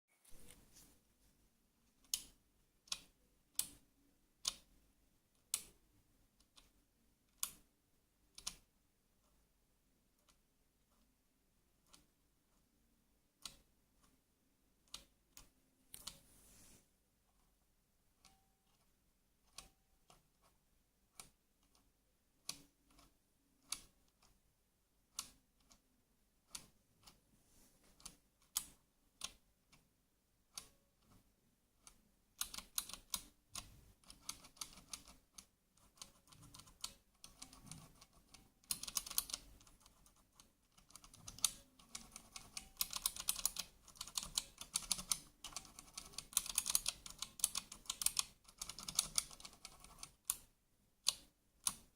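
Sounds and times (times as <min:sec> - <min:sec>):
mechanical keyboard typing: 0:32.4 - 0:51.9.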